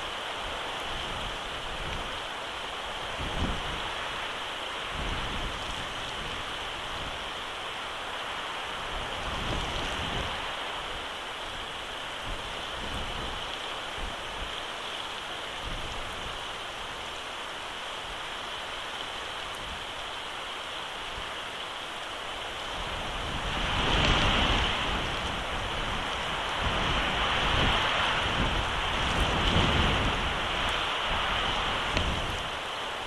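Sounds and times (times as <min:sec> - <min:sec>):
wind gusts buffeting microphone: 0:00.0 - 0:02.3, 0:02.9 - 0:07.4, 0:08.6 - 0:14.6, 0:22.5 - 0:32.8
rain and sleet falling: 0:00.0 - 0:33.0.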